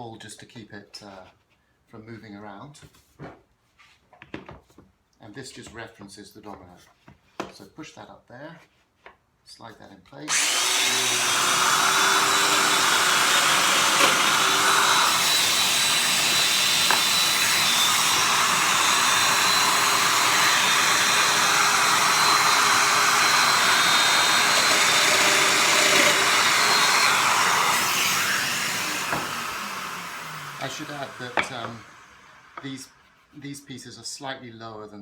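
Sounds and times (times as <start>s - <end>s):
power joiner whirring: 10.3s - 33.1s.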